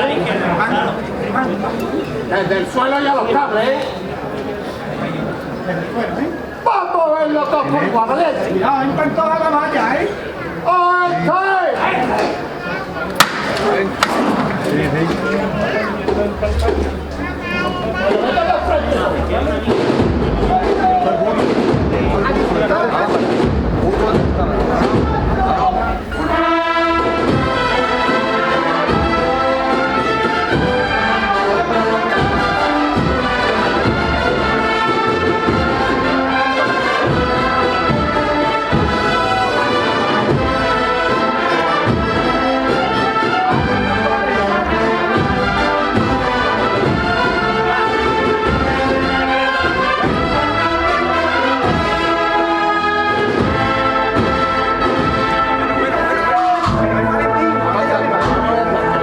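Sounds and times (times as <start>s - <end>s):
brass band playing march: 8.0s - 59.0s
steady drumbeat: 13.2s - 59.0s.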